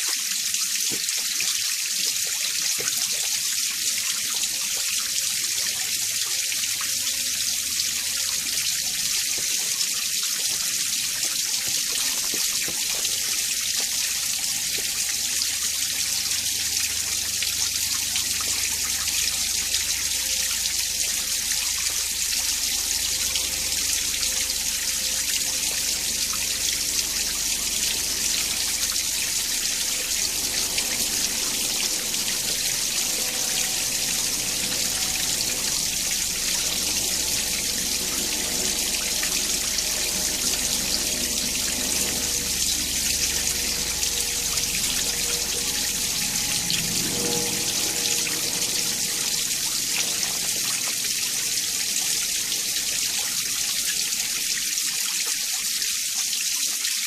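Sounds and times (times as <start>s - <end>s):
mountain stream flowing: 0.0s - 57.0s.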